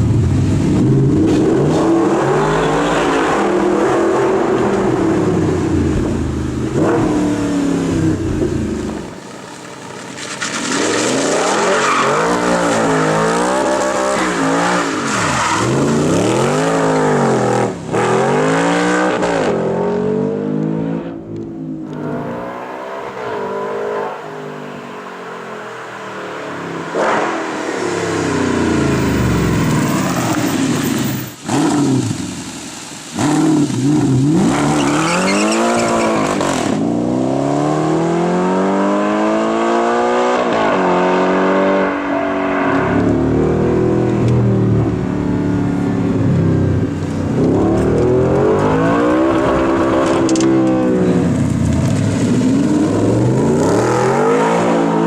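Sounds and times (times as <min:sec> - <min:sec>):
car engine revving: 0:00.0 - 0:55.0.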